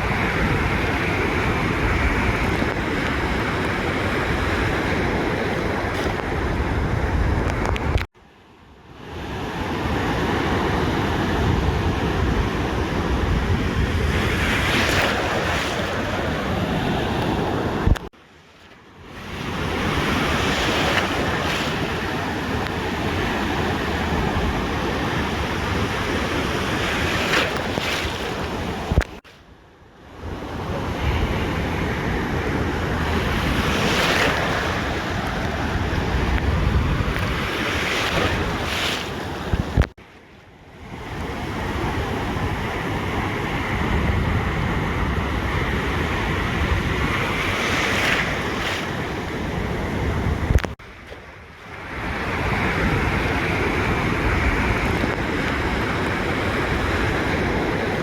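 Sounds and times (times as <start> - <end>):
wind buffeting microphone: 0.0 - 8.1, 9.9 - 18.1, 30.2 - 40.0, 40.8 - 58.0
ocean surf washing onto beach: 0.0 - 58.0.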